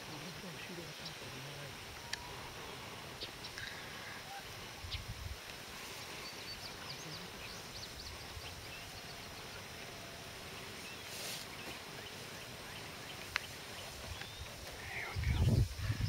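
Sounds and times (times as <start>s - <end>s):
faint bird chirps: 5.9s - 16.0s
brief hiss: 11.0s - 11.8s.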